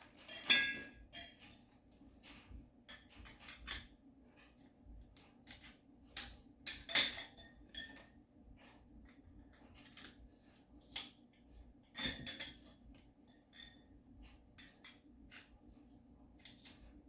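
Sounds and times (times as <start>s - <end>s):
metal tubes clinking and knocking: 0.1s - 1.7s, 5.5s - 8.2s, 12.0s - 14.0s.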